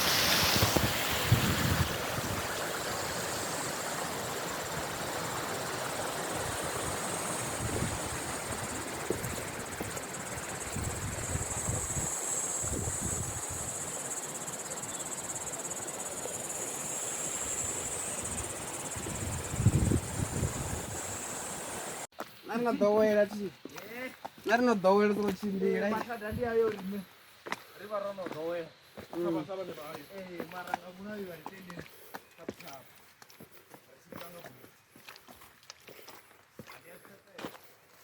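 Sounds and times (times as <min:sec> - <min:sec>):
rushing outdoor noise: 0:00.0 - 0:22.9
insects chirring: 0:00.0 - 0:38.0.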